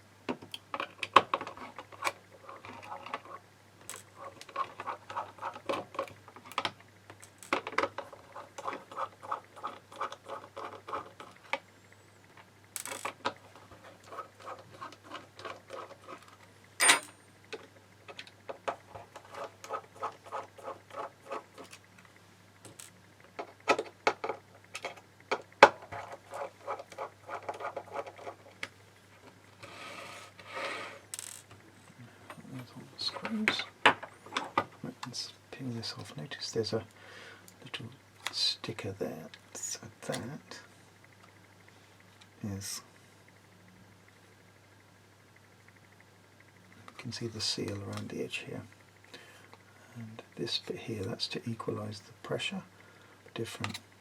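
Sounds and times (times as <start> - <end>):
screws and tools set down: 16.8 - 17.2.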